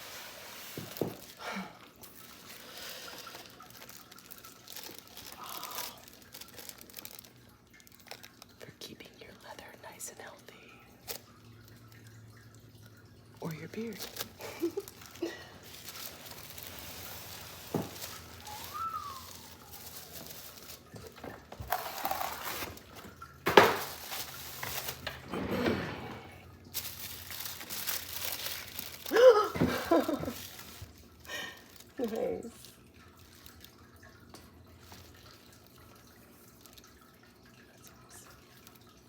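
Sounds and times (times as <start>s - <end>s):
packaging rustling and crinkling: 0.0s - 8.6s, 13.4s - 25.3s, 26.7s - 34.1s, 34.7s - 37.6s.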